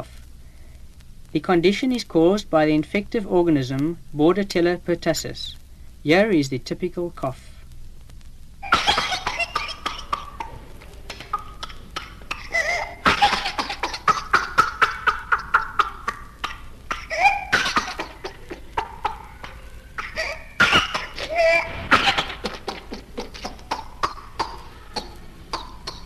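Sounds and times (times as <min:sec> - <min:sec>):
child coughing in fits: 0:08.6 - 0:26.0.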